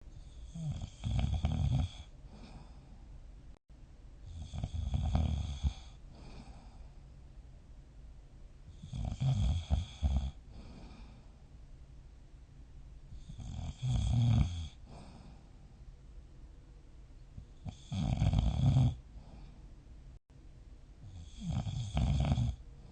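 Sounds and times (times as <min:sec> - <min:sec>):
person snoring: 0:00.2 - 0:02.9, 0:04.3 - 0:06.9, 0:08.7 - 0:11.2, 0:13.2 - 0:15.4, 0:17.6 - 0:19.5, 0:21.0 - 0:22.6.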